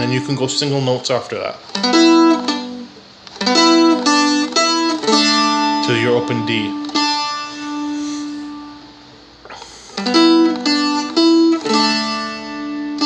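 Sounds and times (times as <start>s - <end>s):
dulcimer chords and picked notes: 1.8s - 8.8s, 10.0s - 13.0s.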